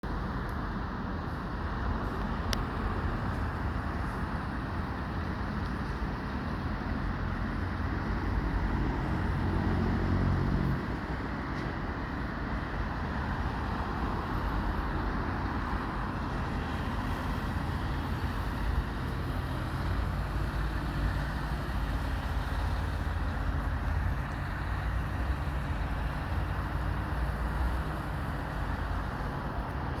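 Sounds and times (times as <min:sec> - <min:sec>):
road traffic rumble: 0:00.0 - 0:30.0
heavy vehicle engine passing: 0:07.5 - 0:11.3.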